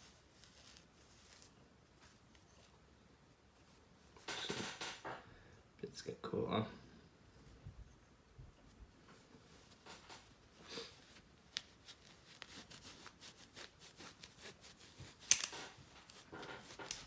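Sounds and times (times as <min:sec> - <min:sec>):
handling clicks and knocks: 0:04.2 - 0:05.2, 0:15.1 - 0:17.0
cloth rubbing on plastic: 0:08.8 - 0:17.0.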